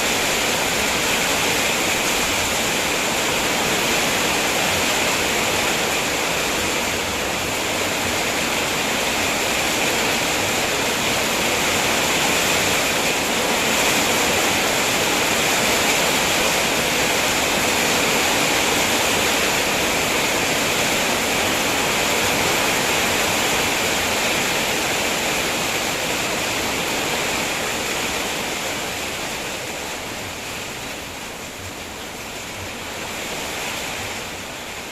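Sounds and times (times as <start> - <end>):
heavy rain: 0.0 - 34.9.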